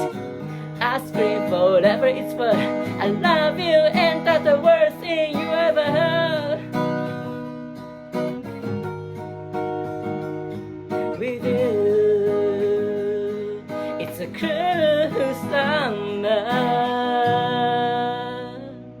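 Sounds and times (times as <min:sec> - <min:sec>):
person singing wordlessly: 0:00.0 - 0:06.8, 0:11.0 - 0:18.8
acoustic guitar: 0:00.0 - 0:19.0.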